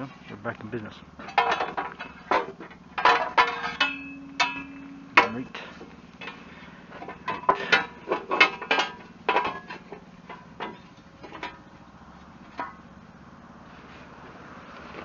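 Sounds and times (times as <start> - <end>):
low steady hum: 0.0 - 15.0
sharp metallic clicks and clanks: 1.2 - 12.9.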